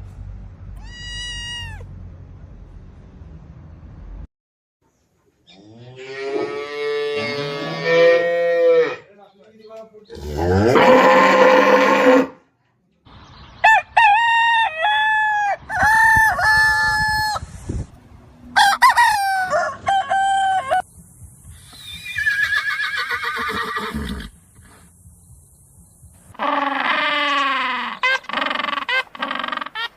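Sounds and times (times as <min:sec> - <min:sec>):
rooster crowing: 0:13.6 - 0:17.4, 0:18.5 - 0:20.8
animal calls: 0:26.3 - 0:29.9.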